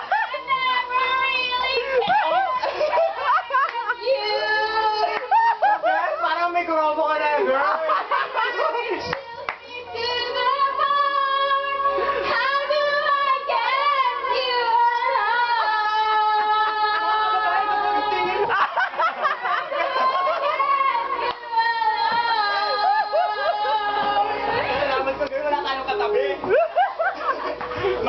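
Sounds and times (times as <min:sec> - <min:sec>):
woman singing with vibrato: 0:00.0 - 0:05.4, 0:08.3 - 0:25.0
karaoke backing track: 0:00.0 - 0:28.0.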